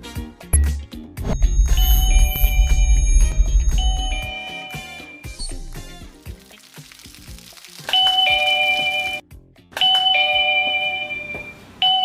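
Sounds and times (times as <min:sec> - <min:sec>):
two-note doorbell chime: 0:01.4 - 0:05.3, 0:09.8 - 0:12.0.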